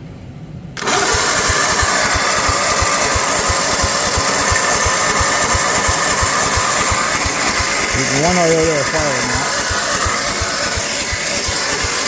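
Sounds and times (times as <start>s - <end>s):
electric starter cranking engine: 0.8s - 12.0s
mower engine running: 0.8s - 12.0s.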